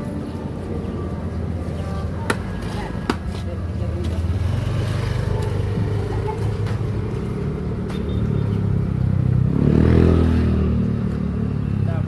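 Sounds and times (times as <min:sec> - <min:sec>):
vehicle engine revving: 0:07.3 - 0:11.8.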